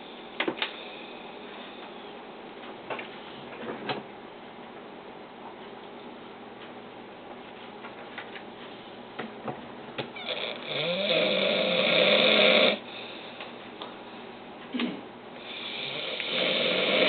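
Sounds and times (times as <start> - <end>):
man snoring: 10.2 - 12.9, 15.4 - 17.0.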